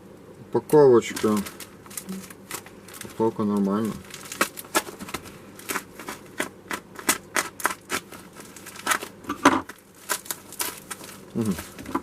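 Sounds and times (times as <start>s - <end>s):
packaging crinkling and rustling: 0.7s - 12.0s.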